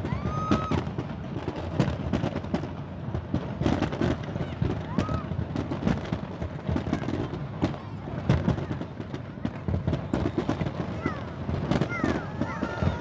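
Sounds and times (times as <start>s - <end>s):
fireworks bangs and cracks: 0.0s - 13.0s.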